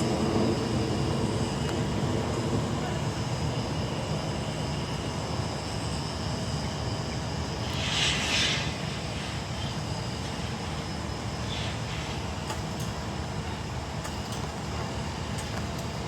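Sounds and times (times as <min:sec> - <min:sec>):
brief hiss: 0:07.7 - 0:08.8.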